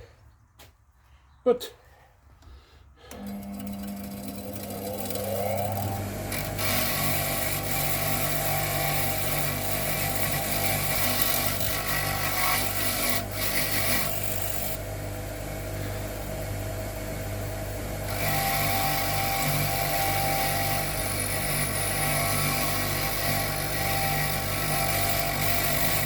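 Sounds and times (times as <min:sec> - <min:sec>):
metal grinding on wheel: 0:03.1 - 0:14.8, 0:18.0 - 0:26.0
bench grinder motor hum: 0:03.1 - 0:26.0.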